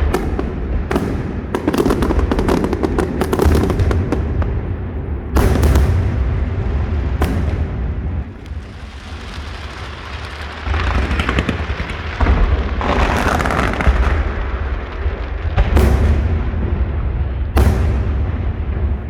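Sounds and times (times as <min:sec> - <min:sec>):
fireworks crackling: 0:00.0 - 0:19.0
fireworks shell bursts rumbling: 0:00.0 - 0:19.0
sharp bang: 0:17.5 - 0:19.0.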